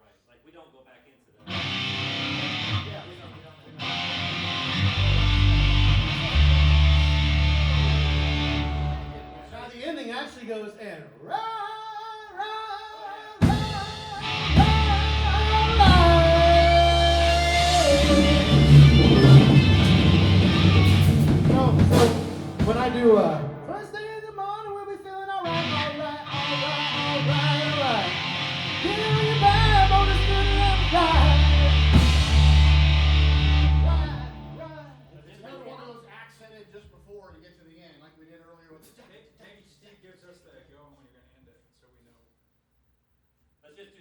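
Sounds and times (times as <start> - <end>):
sustained lead guitar line: 1.4 - 9.6, 13.4 - 24.4, 25.4 - 35.1
rock band playing: 1.5 - 3.0, 3.7 - 9.5, 13.4 - 23.9, 25.4 - 34.8
drums: 3.8 - 9.5, 13.4 - 23.9, 25.4 - 34.7
cymbal crash: 13.4 - 23.8, 31.9 - 34.6.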